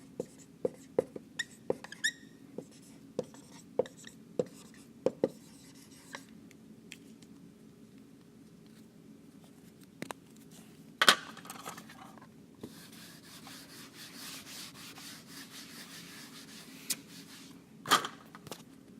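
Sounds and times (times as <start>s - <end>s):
scratchy rubbing on whiteboard: 12.6s - 17.5s.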